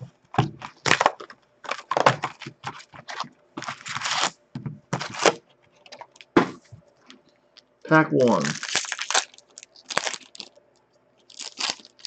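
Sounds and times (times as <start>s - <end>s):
packaging crinkling and tearing: 0.4s - 4.4s, 5.0s - 6.4s, 8.2s - 10.6s, 11.2s - 12.0s.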